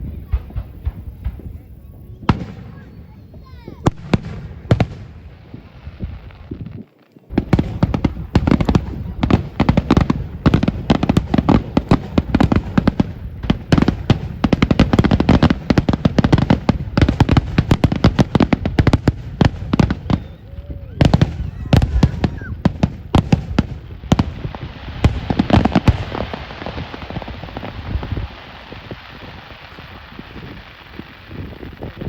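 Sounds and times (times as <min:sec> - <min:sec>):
fireworks bangs and crackles: 0:00.0 - 0:32.0.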